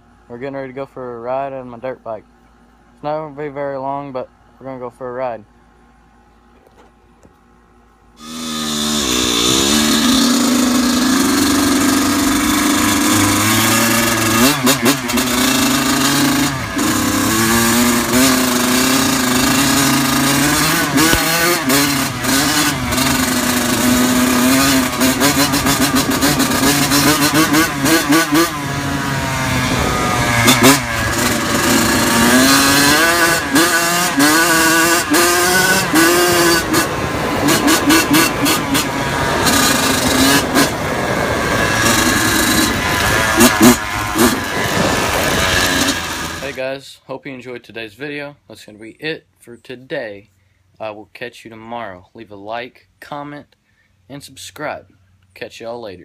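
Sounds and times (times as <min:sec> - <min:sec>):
engine crackles: 0:06.4 - 0:46.6
dirt bike engine revving: 0:08.2 - 0:46.6.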